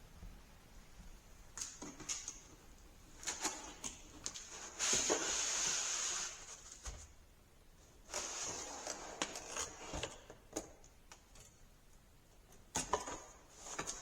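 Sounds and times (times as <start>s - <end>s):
rustling scrape of packaging: 3.2s - 7.0s, 8.0s - 10.2s.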